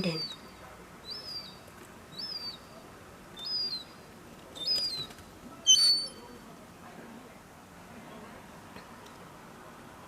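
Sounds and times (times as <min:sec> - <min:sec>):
young seagull calling: 0:00.0 - 0:00.4, 0:01.0 - 0:02.6, 0:03.4 - 0:03.9, 0:05.7 - 0:06.2.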